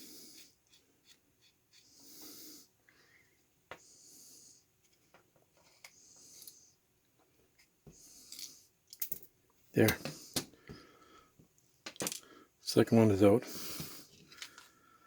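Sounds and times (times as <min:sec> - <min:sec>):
faint breathing through the nose: 0:00.0 - 0:00.8, 0:01.7 - 0:04.7, 0:05.7 - 0:06.8, 0:07.9 - 0:08.7, 0:10.1 - 0:11.4, 0:12.2 - 0:12.6, 0:13.4 - 0:15.0.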